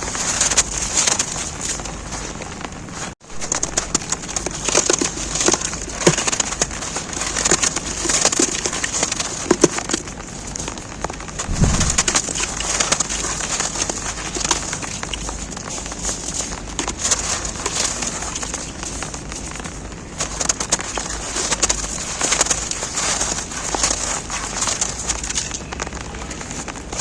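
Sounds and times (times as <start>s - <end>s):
rain pattering on an umbrella: 0.0s - 27.0s
short low sound: 11.4s - 12.2s
snow crunching: 11.4s - 14.8s.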